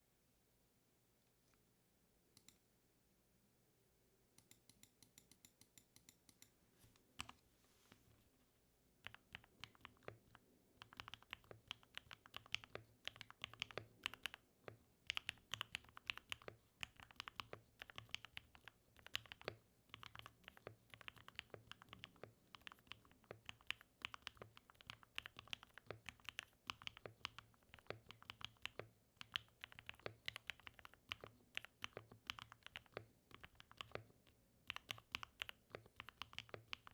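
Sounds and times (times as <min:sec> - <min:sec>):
mechanical keyboard typing: 0:09.0 - 0:36.9.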